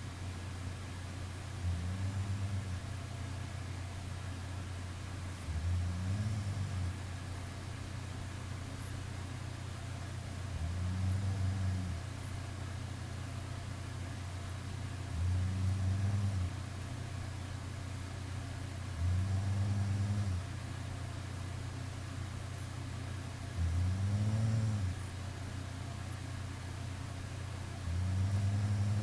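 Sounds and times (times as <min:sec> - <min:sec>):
steady low hum: 0:00.0 - 0:29.0
person snoring: 0:01.6 - 0:02.8, 0:05.4 - 0:07.0, 0:10.5 - 0:12.0, 0:15.1 - 0:16.5, 0:19.0 - 0:20.4, 0:23.6 - 0:25.0, 0:27.8 - 0:29.0.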